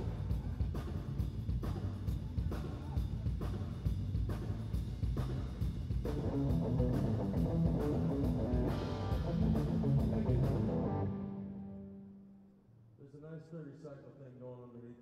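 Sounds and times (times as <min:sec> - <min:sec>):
drums steady beat: 0:00.0 - 0:11.1
rock band playing live: 0:00.0 - 0:11.8.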